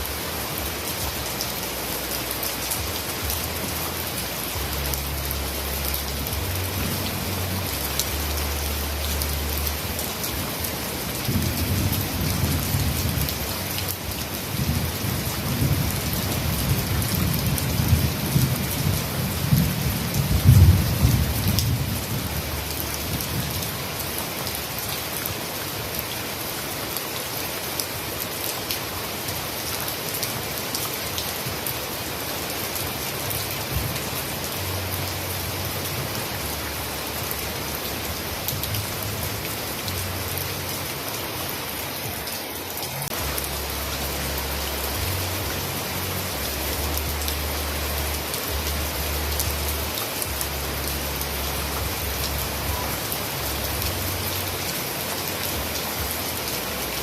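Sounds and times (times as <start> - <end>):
heavy rain: 0.0 - 57.0
low rumble of thunder: 11.2 - 23.7.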